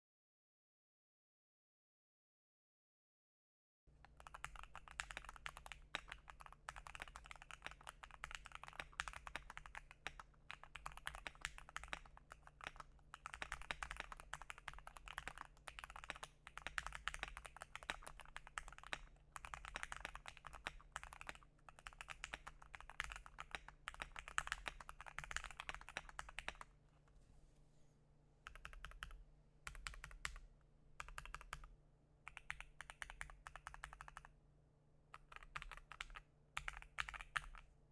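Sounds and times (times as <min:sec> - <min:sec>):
fast typing on keyboard: 0:04.1 - 0:26.7, 0:28.5 - 0:30.4, 0:31.0 - 0:31.7, 0:32.3 - 0:34.3, 0:35.2 - 0:37.7.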